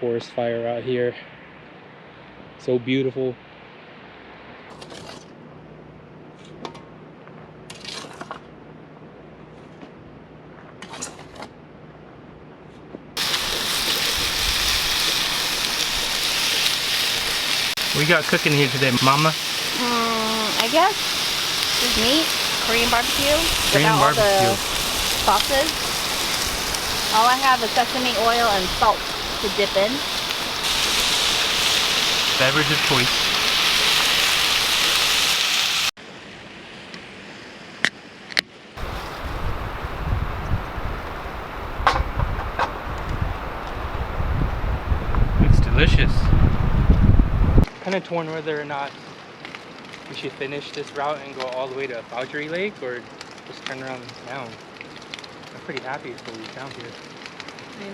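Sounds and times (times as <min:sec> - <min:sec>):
meat sizzling on a hot grill: 0:13.2 - 0:36.0, 0:38.8 - 0:47.7.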